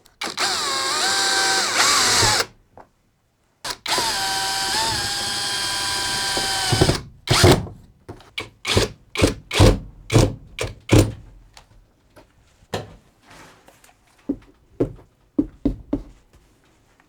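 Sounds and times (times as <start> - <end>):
power drill whine: 0.2 - 2.5, 3.7 - 7.0.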